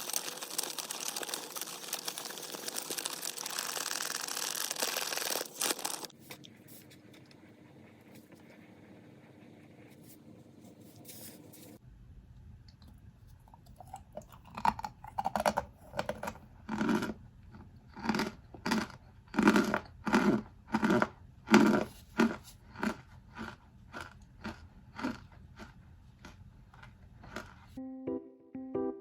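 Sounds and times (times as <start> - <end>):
soft crunches of cornstarch: 0.0 - 7.3, 13.5 - 27.8.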